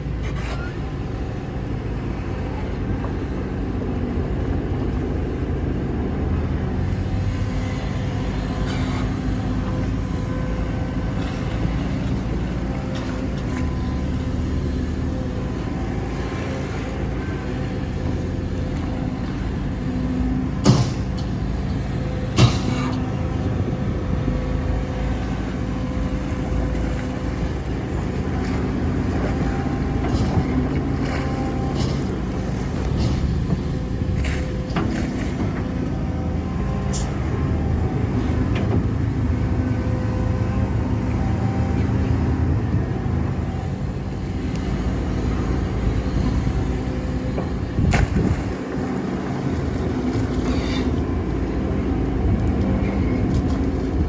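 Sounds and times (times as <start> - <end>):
heavy diesel machinery running: 0.0 - 54.0
sharp metallic knocks: 20.6 - 21.3, 22.4 - 23.0.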